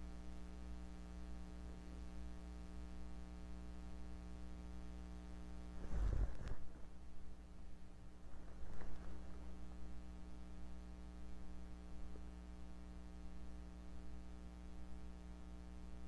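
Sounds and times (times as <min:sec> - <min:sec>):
steady electrical hum: 0:00.0 - 0:16.0
stomach gurgle: 0:05.7 - 0:06.8.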